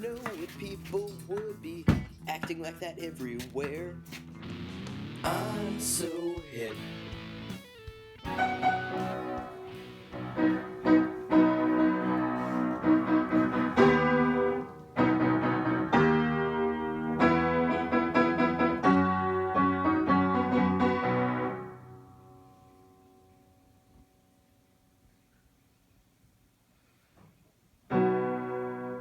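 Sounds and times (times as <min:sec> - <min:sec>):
piano chords: 0:05.0 - 0:24.0, 0:27.9 - 0:29.0.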